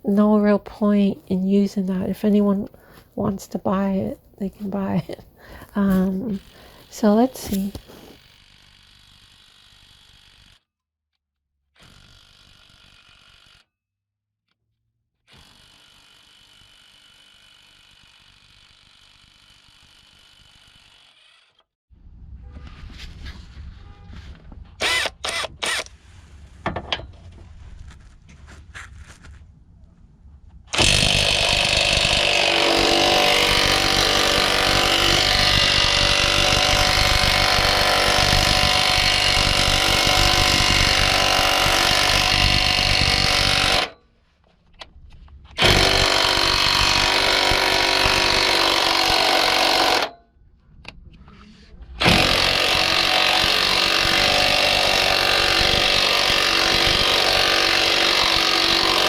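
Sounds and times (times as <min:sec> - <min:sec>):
impact wrench hammering: 0:52.0 - 0:59.0.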